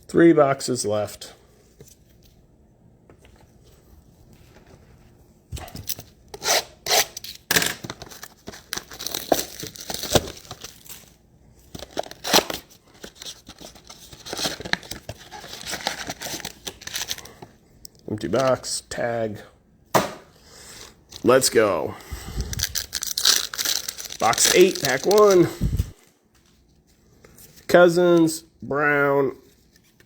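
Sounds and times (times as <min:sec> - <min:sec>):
packaging being torn and crinkled: 0:07.2 - 0:17.4, 0:22.5 - 0:25.5.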